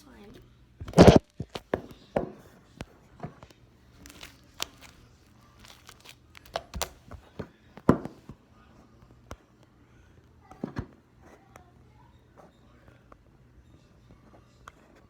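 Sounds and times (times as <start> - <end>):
squelchy slime clicks and pops: 5.6 - 7.0.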